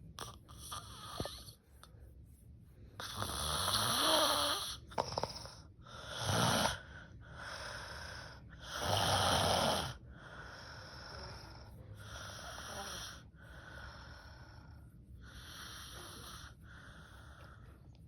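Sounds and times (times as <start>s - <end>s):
quiet breathing: 0.0s - 18.0s
woman snoring loudly: 3.0s - 5.3s, 6.1s - 6.8s, 8.7s - 10.0s, 12.3s - 13.2s.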